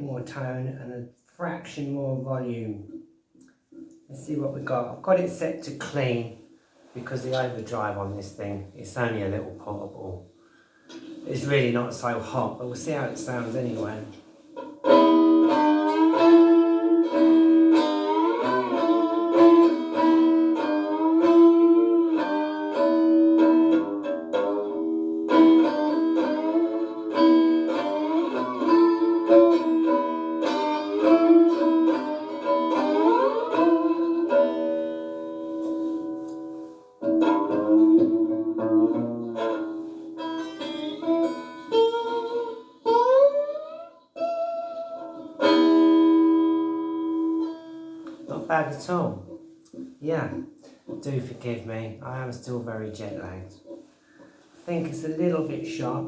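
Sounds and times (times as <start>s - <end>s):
electric slide guitar: 14.6s - 48.3s.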